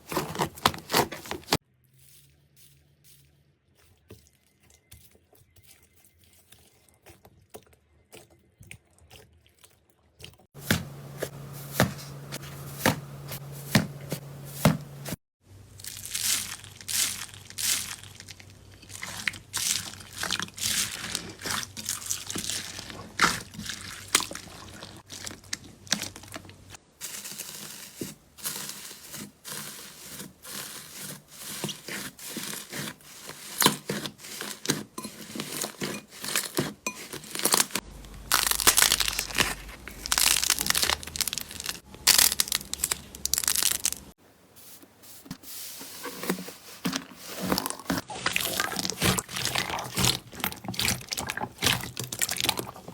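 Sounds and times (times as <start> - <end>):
slime crackling and popping: 37.3 - 44.1, 47.7 - 52.9.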